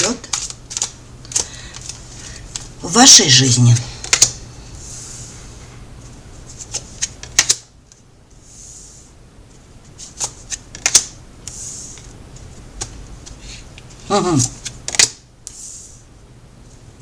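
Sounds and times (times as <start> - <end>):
cards sliding swishes: 10.0 - 12.2.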